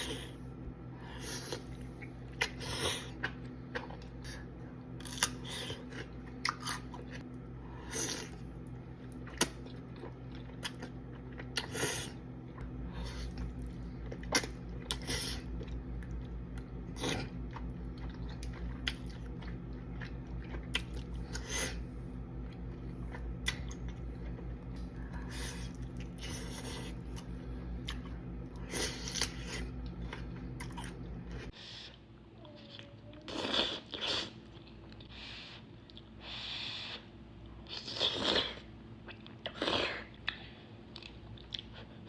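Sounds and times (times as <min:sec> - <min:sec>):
low hum: 0:00.0 - 0:33.2
person chewing and crunching: 0:01.1 - 0:31.9, 0:37.6 - 0:42.0.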